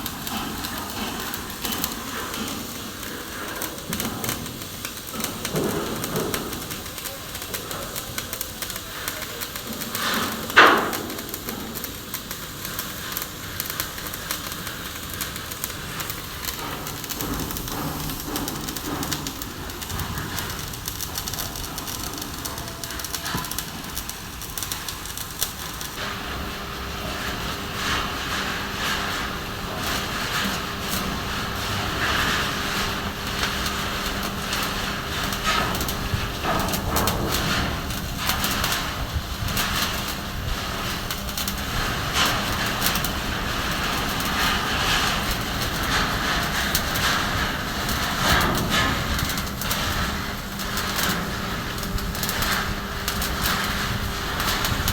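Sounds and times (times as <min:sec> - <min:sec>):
arc welding crackling hiss: 0:00.0 - 0:54.9.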